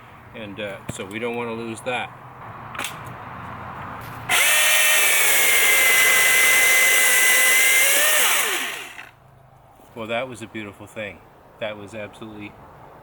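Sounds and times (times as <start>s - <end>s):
electric chainsaw whining: 4.3s - 9.2s.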